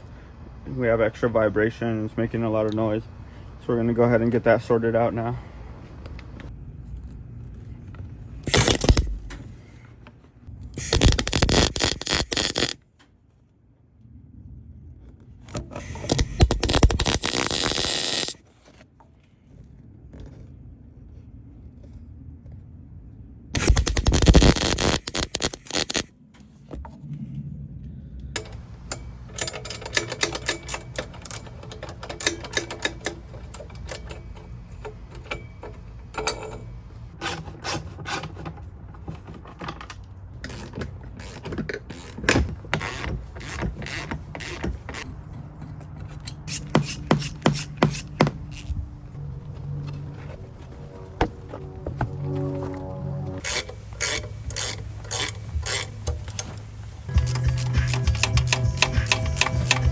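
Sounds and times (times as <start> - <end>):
arc welding crackle: 10.8 - 12.8, 15.8 - 18.4, 23.6 - 26.1.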